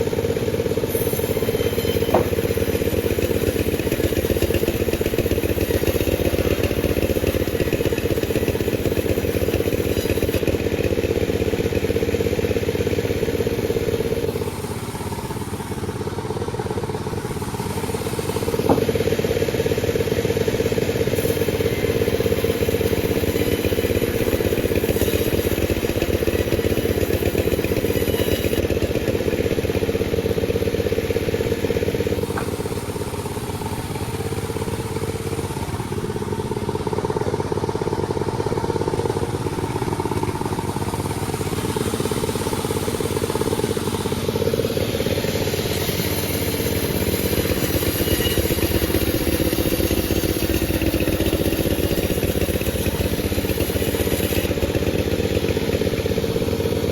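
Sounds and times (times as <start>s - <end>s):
chainsaw sawing log: 0.0s - 15.9s, 17.1s - 36.0s, 38.9s - 56.9s.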